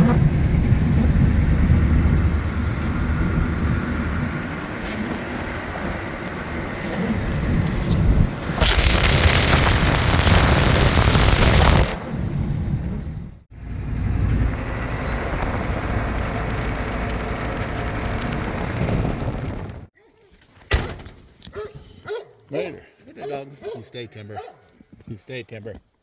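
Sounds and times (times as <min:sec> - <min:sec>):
wind buffeting microphone: 0:00.0 - 0:19.9.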